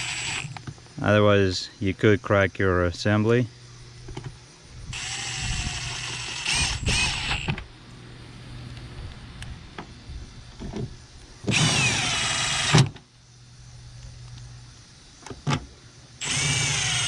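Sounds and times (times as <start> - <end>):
cordless drill motor whine: 0.0 - 0.7, 4.8 - 7.7, 11.5 - 13.0, 16.2 - 17.0.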